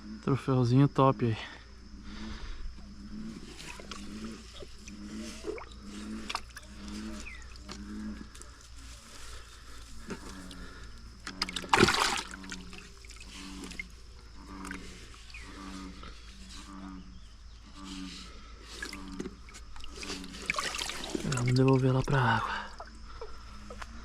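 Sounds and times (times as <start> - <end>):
low animal call: 2.0 - 11.6
water sloshing: 3.1 - 16.4, 18.7 - 24.0
loud splash: 11.5 - 12.6.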